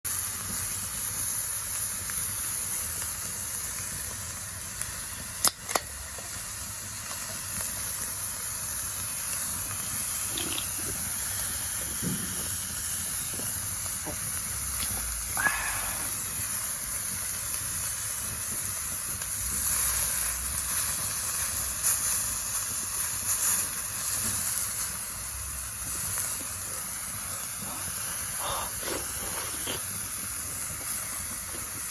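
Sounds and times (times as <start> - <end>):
food sizzling over campfire: 0.1 - 31.9.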